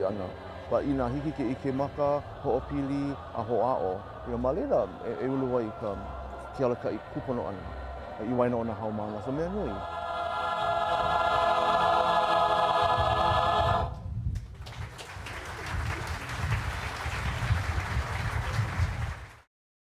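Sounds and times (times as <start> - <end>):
choir holding a chord: 0.0 - 14.0
audience applause: 14.5 - 19.5.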